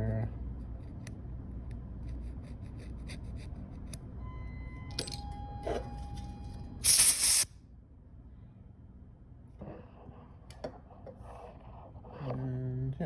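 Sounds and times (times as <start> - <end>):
compressed air blast: 6.8 - 7.5.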